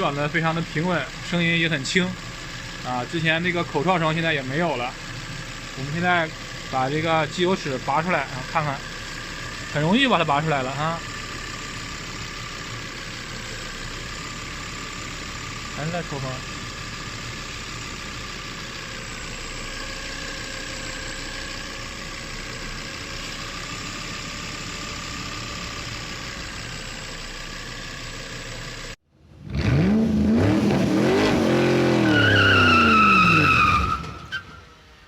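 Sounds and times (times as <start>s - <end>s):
engine revving: 0.0s - 28.7s, 29.3s - 34.3s
car engine idling: 0.0s - 29.4s
loud high whistle: 32.0s - 34.7s.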